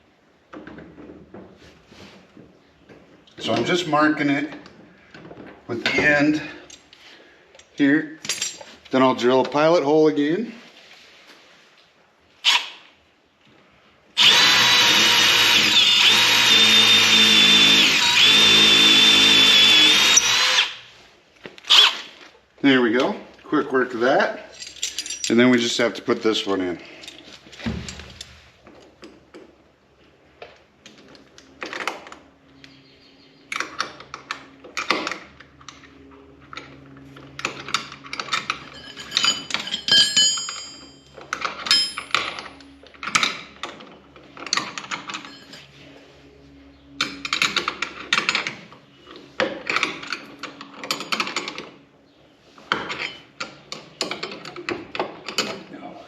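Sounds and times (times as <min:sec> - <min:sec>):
impact driver driving screw: 0:14.2 - 0:20.8.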